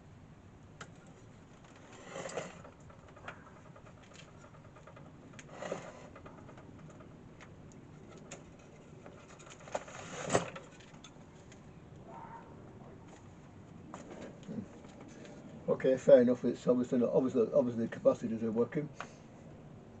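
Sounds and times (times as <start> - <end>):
scraping or rustling: 1.1 - 7.1, 8.0 - 11.5.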